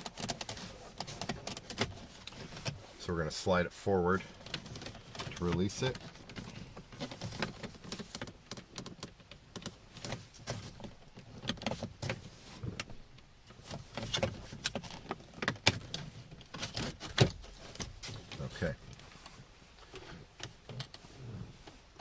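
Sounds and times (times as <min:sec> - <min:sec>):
plastic trim clicking and rattling: 0:00.0 - 0:02.8, 0:04.3 - 0:19.0.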